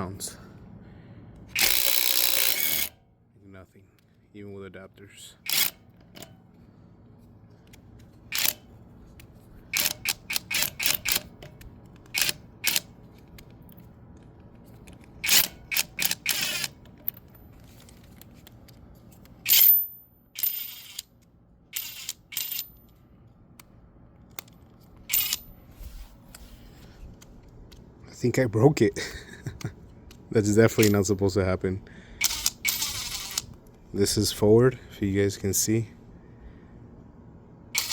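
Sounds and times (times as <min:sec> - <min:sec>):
impact wrench rattling clicks: 0:01.5 - 0:03.0, 0:05.5 - 0:06.3, 0:07.7 - 0:08.6, 0:09.8 - 0:13.5, 0:14.8 - 0:17.3, 0:21.8 - 0:22.7, 0:24.3 - 0:25.5, 0:30.7 - 0:31.1, 0:32.2 - 0:33.6.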